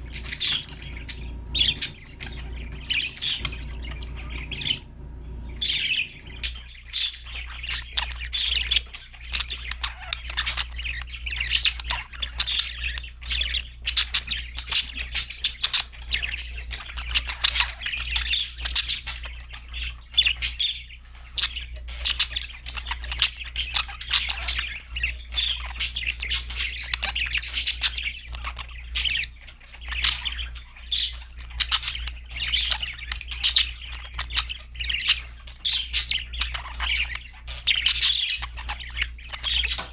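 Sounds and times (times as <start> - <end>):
steady low hum: 0.0 - 8.3
budgerigars chirping and squawking: 0.0 - 39.9.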